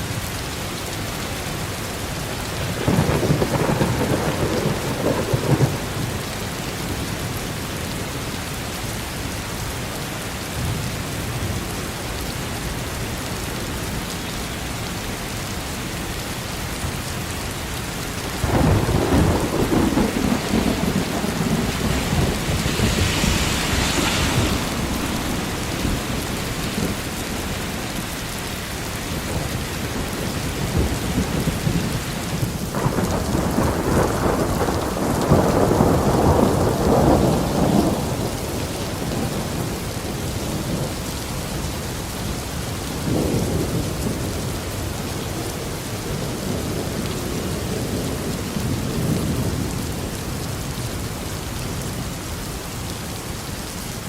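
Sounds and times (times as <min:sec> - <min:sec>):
steady rain: 0:00.0 - 0:54.0
thunder rolling: 0:02.7 - 0:06.1, 0:18.4 - 0:39.7.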